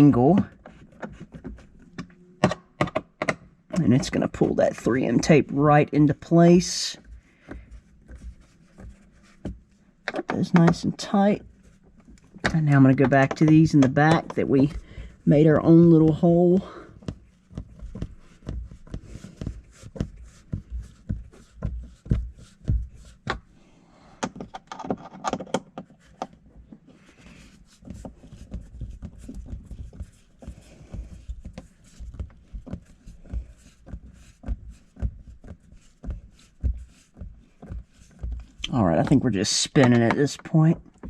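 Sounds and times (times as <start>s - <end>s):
screwdriver clicks and knocks: 2.0s - 3.8s.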